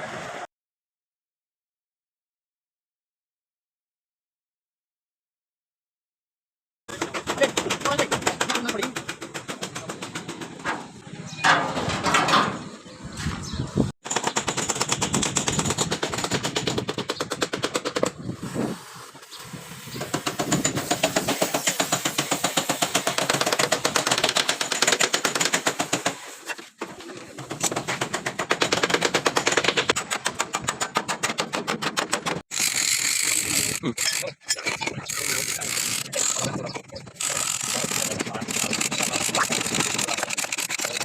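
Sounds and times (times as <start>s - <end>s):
rapid mechanical rattling: 27.4s - 41.0s.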